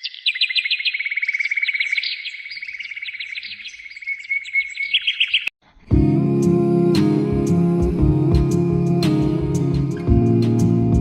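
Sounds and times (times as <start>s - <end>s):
bird trilling song: 0.0s - 5.6s.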